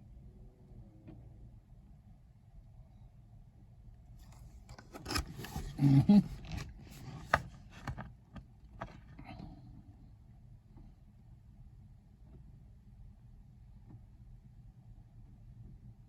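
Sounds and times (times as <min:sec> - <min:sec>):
rubbing and scraping handling noises: 0:04.2 - 0:09.2.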